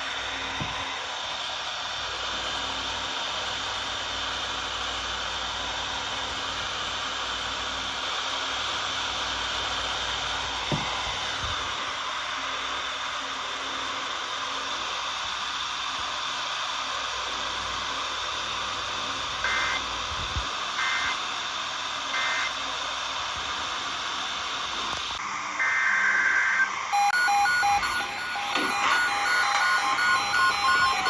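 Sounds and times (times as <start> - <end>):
radio static hiss: 0.0 - 26.9
digital data tones: 25.6 - 31.0
beeping electronic melody: 27.0 - 31.0.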